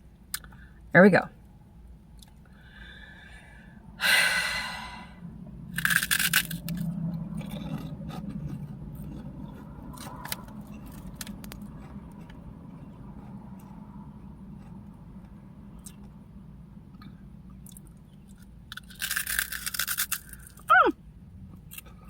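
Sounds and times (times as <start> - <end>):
crunchy chips being chewed: 5.7 - 16.2, 16.9 - 20.8.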